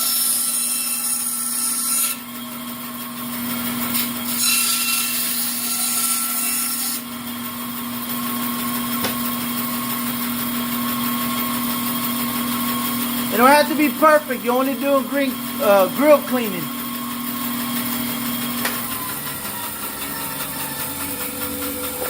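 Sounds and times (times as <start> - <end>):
bandsaw humming: 0.0 - 22.0
saw blade cutting wood: 0.0 - 22.0.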